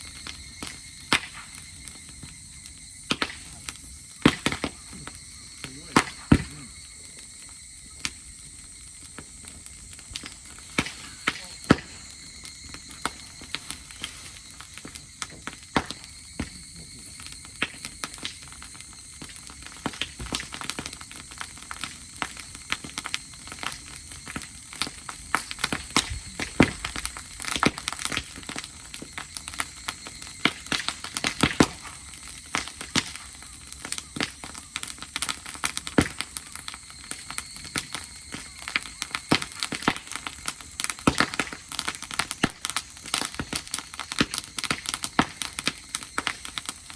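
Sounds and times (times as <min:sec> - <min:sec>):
campfire crackling and popping: 0:00.0 - 0:46.9.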